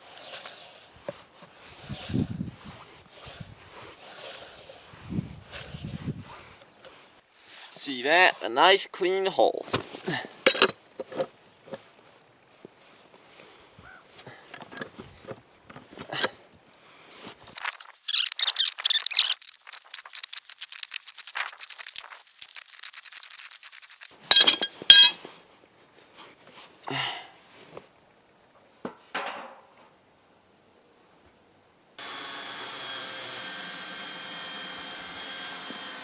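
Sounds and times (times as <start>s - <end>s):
hard objects clinking and clattering: 17.6s - 25.3s.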